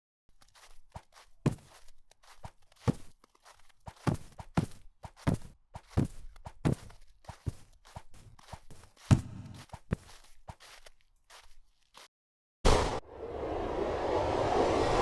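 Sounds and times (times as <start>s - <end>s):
firm footsteps walking: 0.4s - 12.0s.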